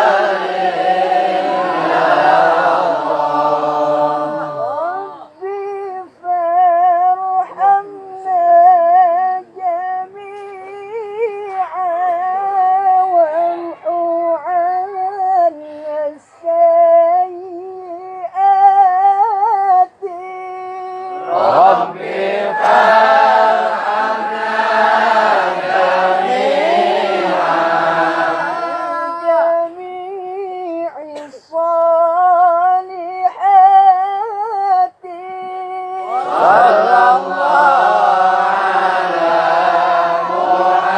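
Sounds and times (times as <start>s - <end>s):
solo voice chanting devotional song: 0.0s - 40.9s.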